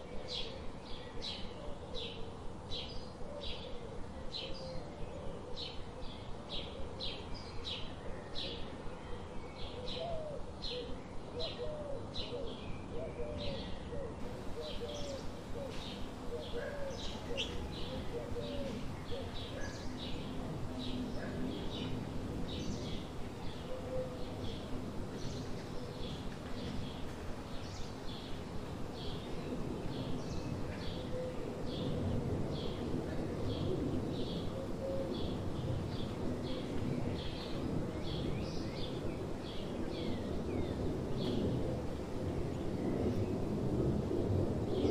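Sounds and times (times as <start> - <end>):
low background hiss: 0.0 - 44.9
bird chirping: 2.8 - 32.9
bird cooing: 3.2 - 7.3, 9.6 - 29.2, 30.0 - 36.8.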